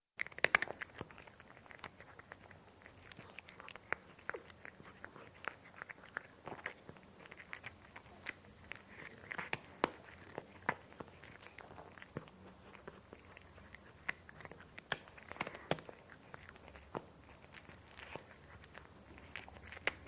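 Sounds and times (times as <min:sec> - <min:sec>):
cat crunching dry kibble: 0:00.2 - 0:20.0.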